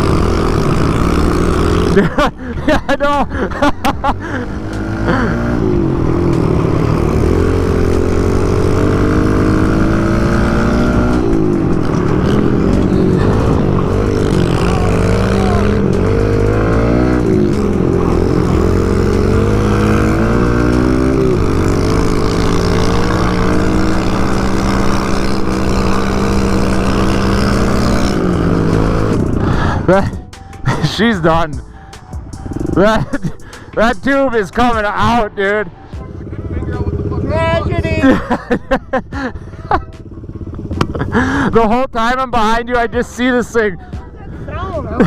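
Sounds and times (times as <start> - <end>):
small engine revving: 0.0 - 2.2, 4.3 - 30.9
steady engine drone: 0.0 - 41.6.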